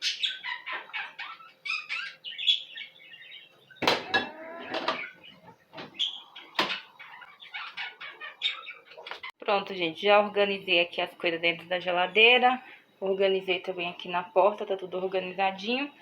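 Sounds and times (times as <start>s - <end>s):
animal chirping: 0.0s - 9.3s.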